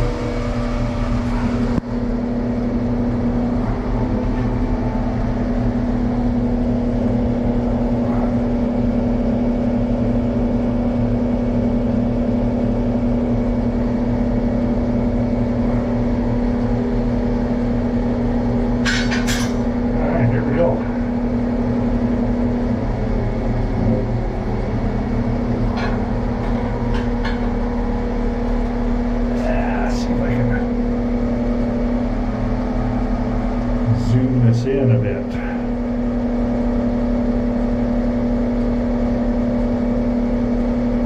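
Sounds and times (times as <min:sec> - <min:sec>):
engine idling: 0:00.0 - 0:41.0
metallic clatter: 0:18.8 - 0:19.7, 0:25.6 - 0:28.6.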